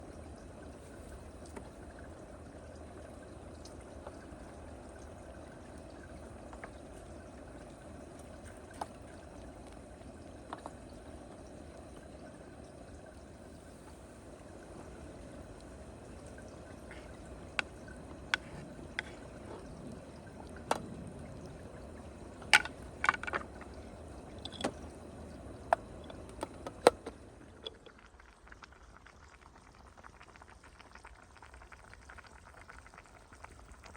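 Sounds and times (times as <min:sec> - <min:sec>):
sharp clicks and knocks: 0:22.4 - 0:23.8, 0:24.4 - 0:24.8, 0:25.7 - 0:27.8.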